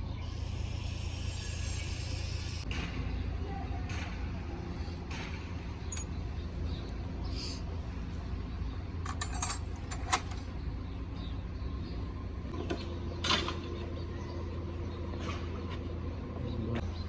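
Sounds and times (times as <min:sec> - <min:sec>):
steady low hum: 0:00.0 - 0:17.0
metallic clinks: 0:05.8 - 0:06.2, 0:09.0 - 0:10.3.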